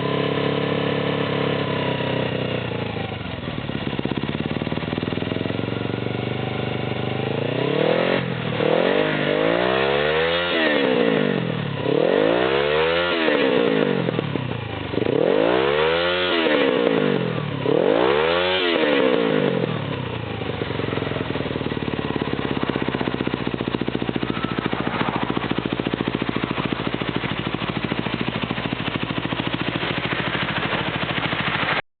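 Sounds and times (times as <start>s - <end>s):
motorcycle engine idling: 0.0s - 31.8s
motorcycle engine revving: 0.0s - 31.8s.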